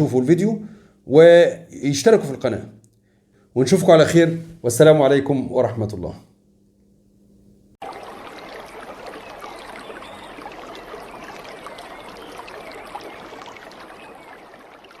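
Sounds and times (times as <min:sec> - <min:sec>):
running water rushing: 0:07.8 - 0:15.0
faint high chirps: 0:09.1 - 0:14.4.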